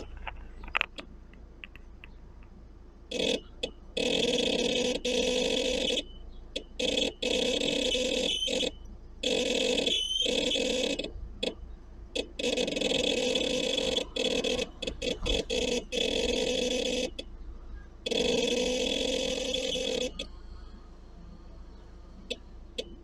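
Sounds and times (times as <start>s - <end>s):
loud rattling noise from car: 0.0s - 2.2s, 3.1s - 17.4s, 18.0s - 20.4s
car engine running: 0.0s - 23.0s.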